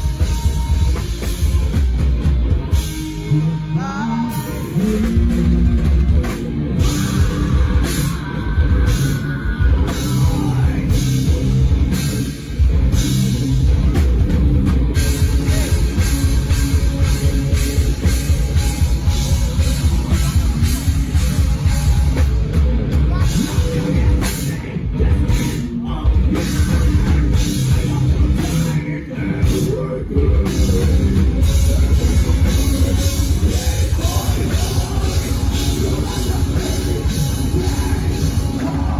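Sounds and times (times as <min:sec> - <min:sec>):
fast drum kit: 0:00.0 - 0:03.3, 0:04.3 - 0:38.9
rock band playing live: 0:00.0 - 0:38.9
person singing: 0:02.5 - 0:06.1, 0:06.8 - 0:11.7, 0:14.9 - 0:38.9.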